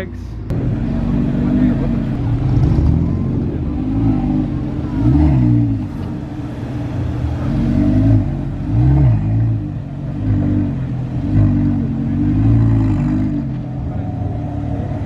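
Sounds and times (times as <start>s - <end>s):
car engine idling: 0.0s - 15.0s
car engine revving in blips: 0.5s - 15.0s.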